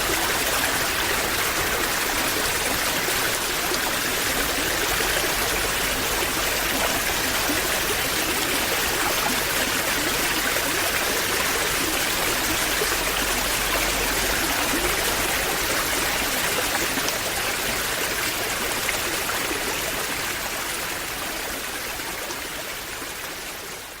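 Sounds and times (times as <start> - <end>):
waterfall splashing: 0.0 - 19.1.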